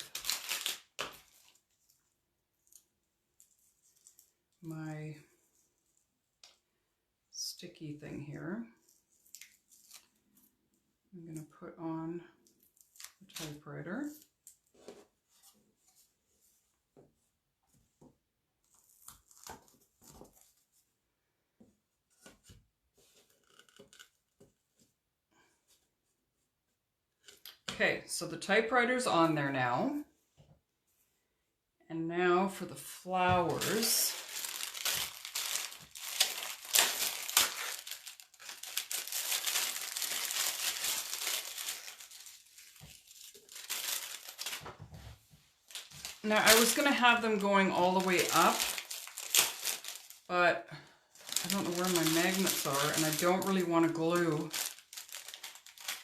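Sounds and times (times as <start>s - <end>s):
transfer sheet rustling: 33.2s - 50.3s, 51.2s - 56.0s.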